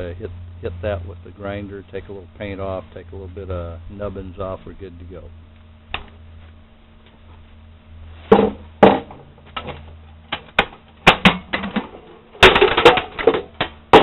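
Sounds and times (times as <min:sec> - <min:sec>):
metal parts knocking and clattering: 0:11.1 - 0:14.0.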